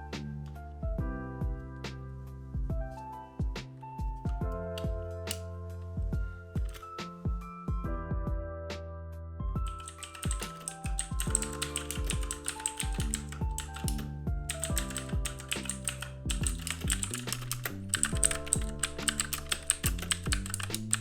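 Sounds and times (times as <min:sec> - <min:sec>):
background music: 0:00.0 - 0:21.0
fast mechanical keyboard typing: 0:09.6 - 0:21.0.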